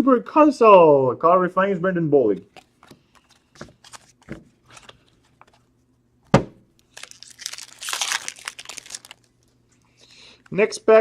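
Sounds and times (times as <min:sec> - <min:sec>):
card pack wrapper tearing and crinkling: 0:02.6 - 0:05.6, 0:06.8 - 0:09.6.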